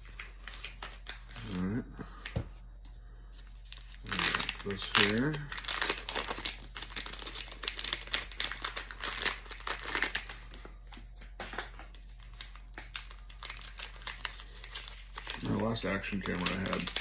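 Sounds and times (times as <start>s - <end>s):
packaging crinkling: 3.5s - 17.0s.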